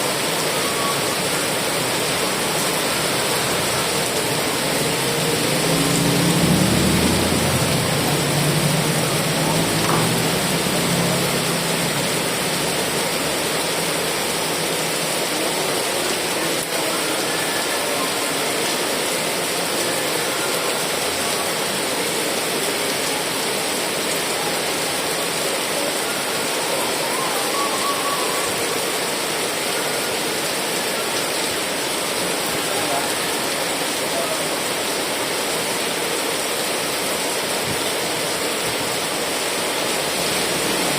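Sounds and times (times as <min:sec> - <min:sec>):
heavy rain: 0:00.0 - 0:40.9.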